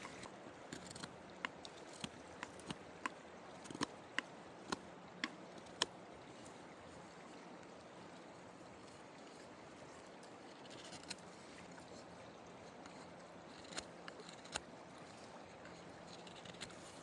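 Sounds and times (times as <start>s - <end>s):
knife carving wood clicks: 0.0s - 5.9s, 12.9s - 14.7s, 15.7s - 16.8s
faint background hiss: 0.0s - 17.0s.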